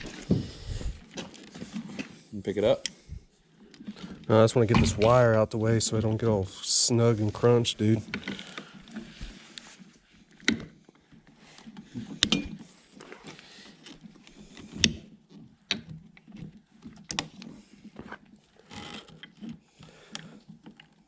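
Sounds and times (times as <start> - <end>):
tools and metal hardware clicking: 12.2 - 12.6.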